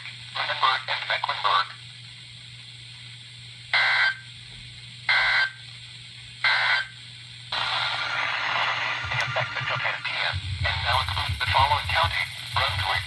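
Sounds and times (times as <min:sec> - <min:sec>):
radio hiss: 0:07.6 - 0:13.0
raspy digital data screech: 0:10.9 - 0:13.0.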